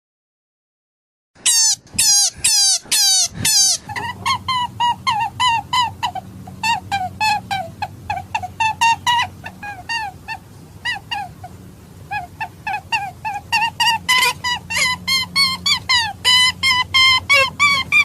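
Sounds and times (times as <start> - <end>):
hare squealing: 1.4 - 4.5, 13.4 - 18.0
low steady hum: 1.4 - 18.0.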